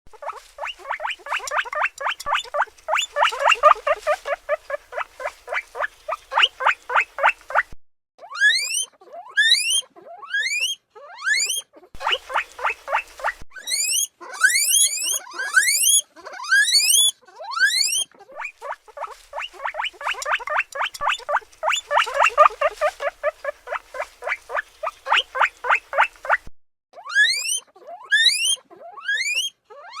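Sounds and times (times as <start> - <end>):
guinea pig squeaking: 0.1 - 30.0
guinea pig wheeking: 0.1 - 30.0.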